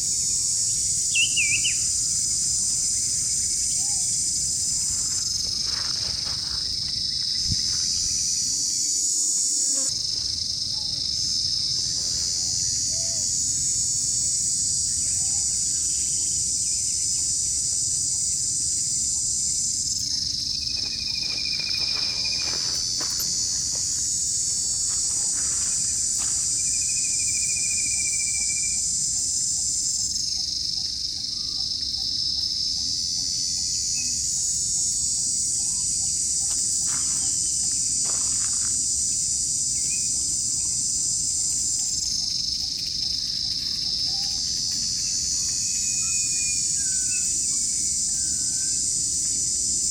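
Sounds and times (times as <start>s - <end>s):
high-pitched insect chorus: 0.0s - 49.9s
faint rustles: 4.4s - 8.4s, 20.6s - 27.1s.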